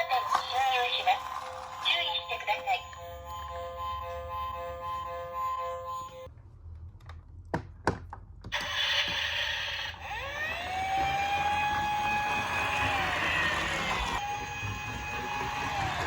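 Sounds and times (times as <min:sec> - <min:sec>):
toy police siren wailing: 0:08.6 - 0:16.0.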